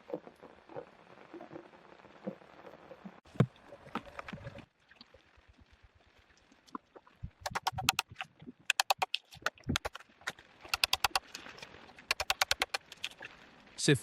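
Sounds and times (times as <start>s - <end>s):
rapid knocks on wood: 12.1s - 12.8s.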